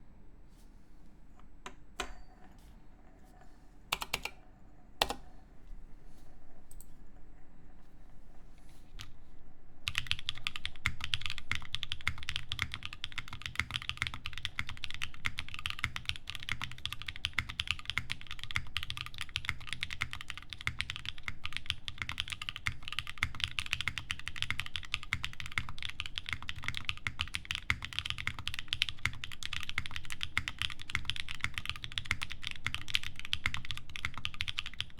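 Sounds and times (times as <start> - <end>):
mechanical keyboard typing: 3.9 - 4.4, 5.0 - 5.3, 9.9 - 34.9.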